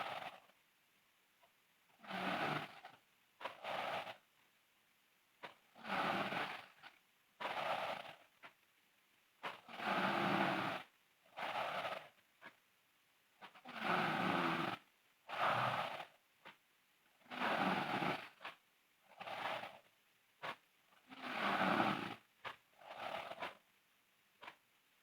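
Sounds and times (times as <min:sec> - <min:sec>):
girl snoring loudly: 0:02.0 - 0:03.0, 0:05.8 - 0:06.8, 0:09.7 - 0:10.9, 0:13.7 - 0:16.1, 0:17.2 - 0:18.4, 0:21.1 - 0:23.5.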